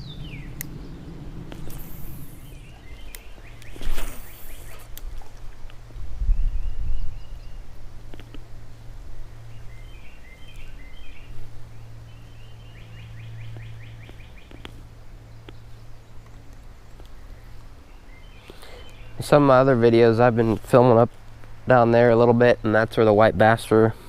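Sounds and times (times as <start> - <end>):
small birds chirping: 0.0 - 5.2, 9.4 - 21.7.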